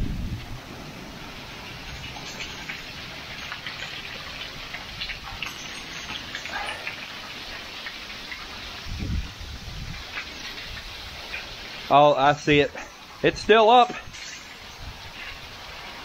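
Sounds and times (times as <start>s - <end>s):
low thunder rumble: 0.0s - 5.4s
heavy rain: 0.0s - 16.0s
close raindrops ticking: 0.5s - 16.0s.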